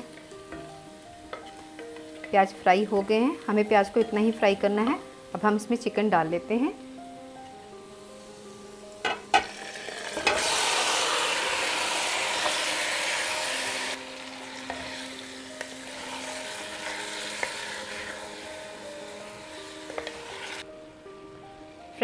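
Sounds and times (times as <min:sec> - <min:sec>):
chicken sizzling in hot oil: 0:00.0 - 0:20.7.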